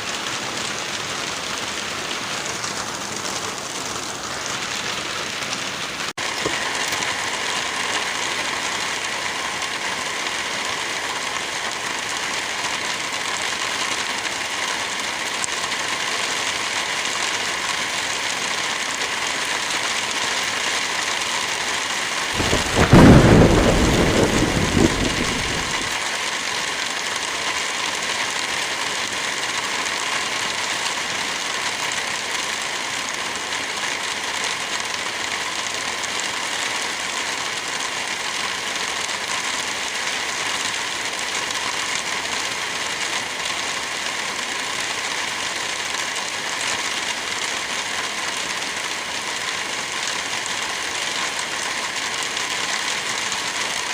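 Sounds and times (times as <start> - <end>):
light rain falling: 0.0 - 53.9
low rumble of thunder: 22.4 - 26.0.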